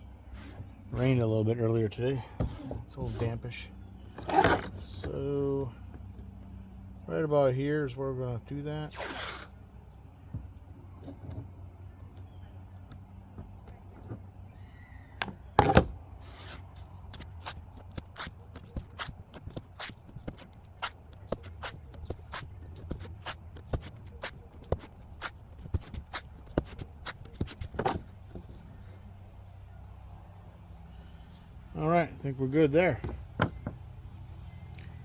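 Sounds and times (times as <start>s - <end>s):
tape ripping off roll: 8.9s - 9.6s, 15.7s - 28.1s.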